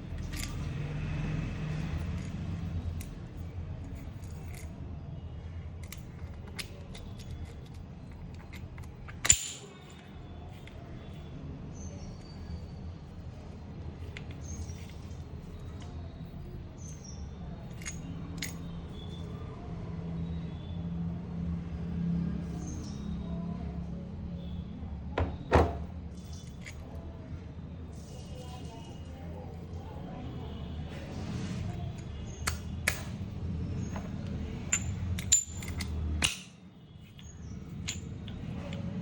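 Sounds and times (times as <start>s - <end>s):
metallic tool clinks: 8.4s - 10.0s, 34.7s - 36.6s, 37.7s - 38.4s.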